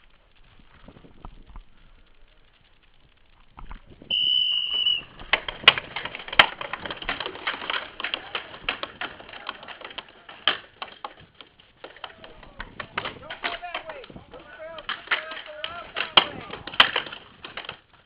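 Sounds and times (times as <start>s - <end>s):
whistle blowing: 4.1s - 5.2s
paintball markers firing: 4.1s - 17.9s.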